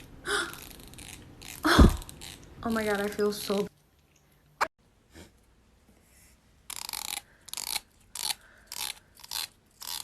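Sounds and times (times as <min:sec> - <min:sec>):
comb teeth rasping: 0:00.4 - 0:02.6, 0:06.7 - 0:10.0.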